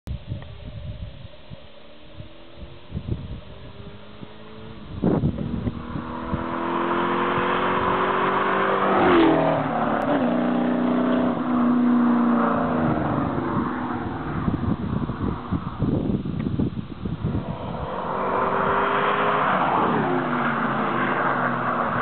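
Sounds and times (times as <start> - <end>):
cars accelerating past: 3.6 - 16.0, 17.1 - 22.0.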